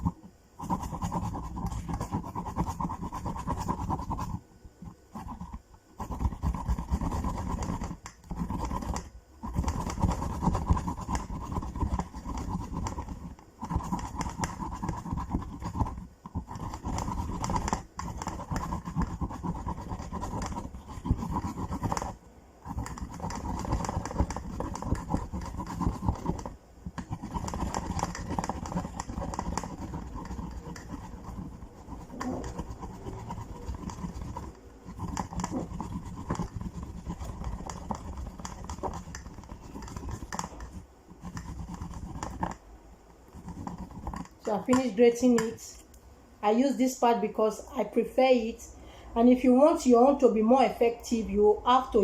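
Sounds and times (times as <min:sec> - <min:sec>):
ginger rasping on a grater: 0:05.1 - 0:42.6.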